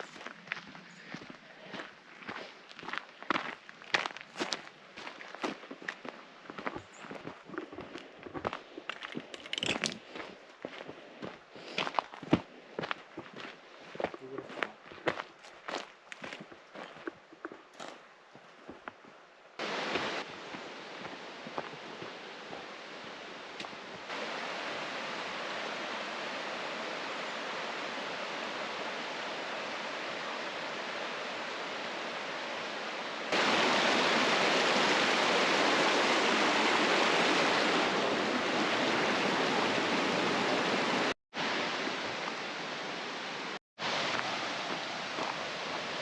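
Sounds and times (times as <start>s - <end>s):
mountain creek rushing: 19.6s - 46.0s.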